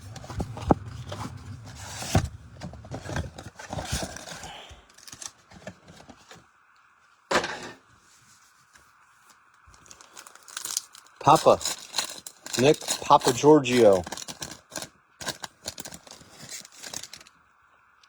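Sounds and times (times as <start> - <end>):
foil packs rustling: 0.0 - 6.5, 9.8 - 17.3.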